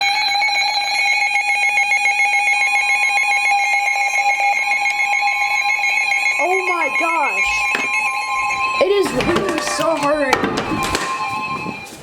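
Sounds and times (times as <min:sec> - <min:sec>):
fast warbling high tones: 0:05.3 - 0:12.0
steady electronic alert tone: 0:06.3 - 0:10.3.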